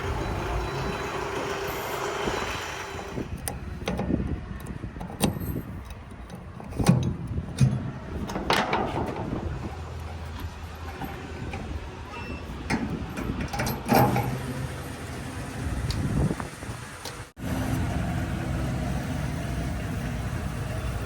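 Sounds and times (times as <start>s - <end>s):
diesel engine running: 0.0s - 4.7s, 7.2s - 21.0s
metallic knocks and clanks: 5.0s - 14.5s.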